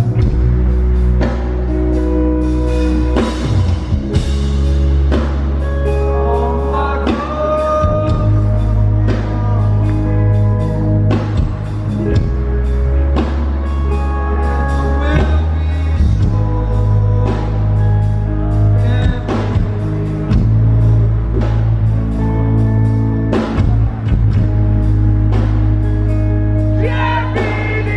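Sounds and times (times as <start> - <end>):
guitar: 0.0 - 27.9
heavy bass: 0.0 - 27.9
live rock band playing: 0.0 - 27.9
person singing: 5.8 - 10.8, 13.6 - 20.0, 26.6 - 27.9.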